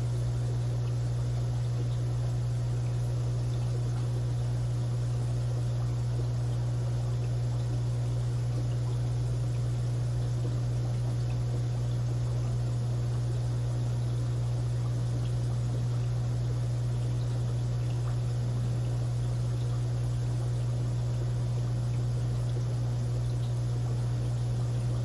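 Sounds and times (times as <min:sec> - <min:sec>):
aquarium filter hum: 0:00.0 - 0:25.0.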